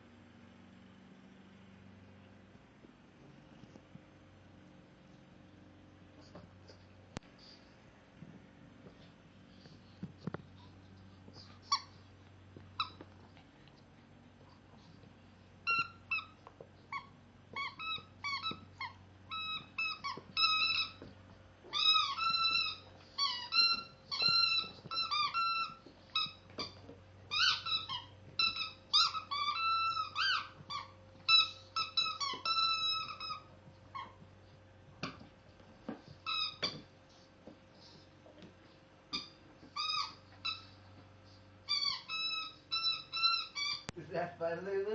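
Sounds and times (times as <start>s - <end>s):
squeaky dog toy squeaking: 11.4s - 12.0s, 12.8s - 13.1s, 15.6s - 34.3s, 36.0s - 36.9s, 39.1s - 44.0s.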